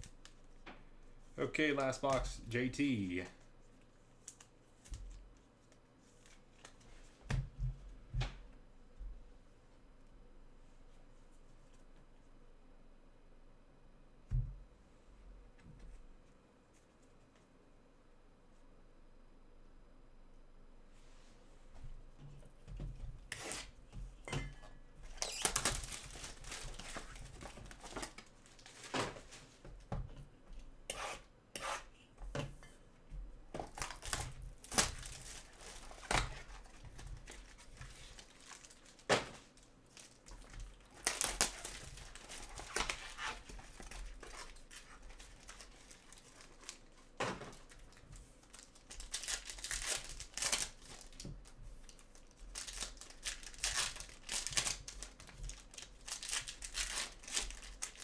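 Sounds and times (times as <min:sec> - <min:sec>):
wrappers being torn and crinkled: 0:23.3 - 0:23.8, 0:25.1 - 0:29.5, 0:33.6 - 0:58.0.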